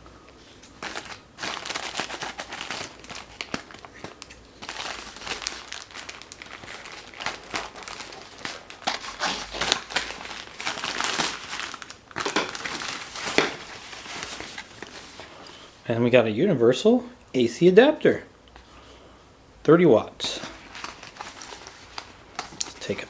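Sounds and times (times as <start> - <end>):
packaging crinkling and rustling: 0.7 - 15.4, 20.2 - 23.0.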